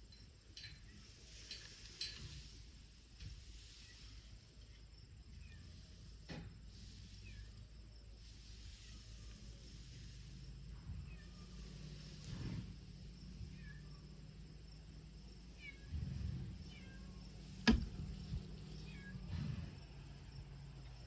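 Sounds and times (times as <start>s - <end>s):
dull bumps: 17.6s - 18.5s
sharp knock: 17.7s - 18.0s.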